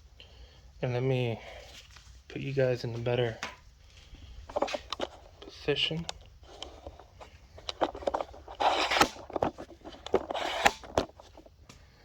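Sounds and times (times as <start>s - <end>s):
camera handling scrapes and knocks: 4.5s - 5.4s, 6.4s - 11.5s.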